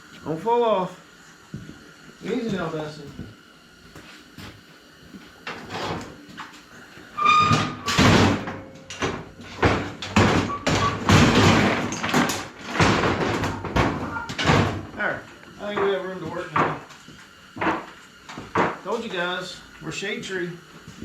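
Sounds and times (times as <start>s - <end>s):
cart squeak: 7.2s - 8.0s.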